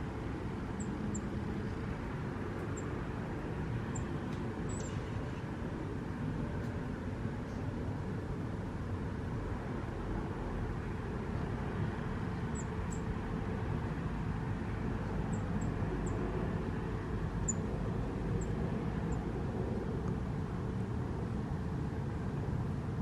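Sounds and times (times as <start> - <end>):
small bird chirping: 4.7 - 5.0, 12.5 - 13.0.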